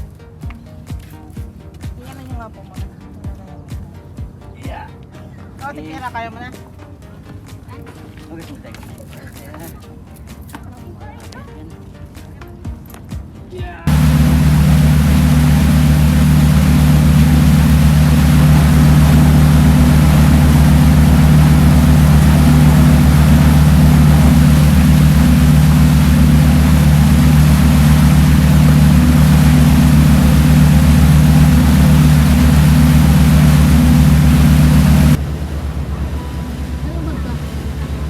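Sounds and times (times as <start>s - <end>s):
boat engine running: 13.9s - 38.0s.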